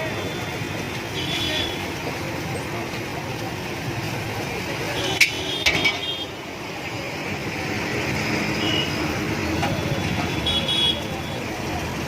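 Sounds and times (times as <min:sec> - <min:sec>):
road traffic noise: 0:00.0 - 0:12.0
metal utensils clanking against pan: 0:05.1 - 0:06.1.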